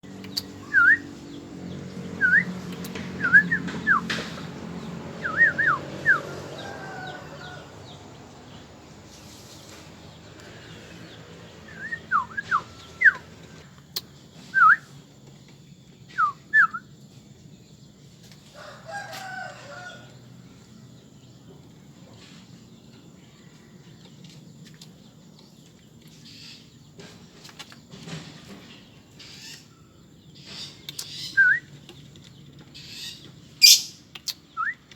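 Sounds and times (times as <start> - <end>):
birds chirping in shrill bursts: 26.1 - 27.4, 28.6 - 31.9, 32.7 - 34.7.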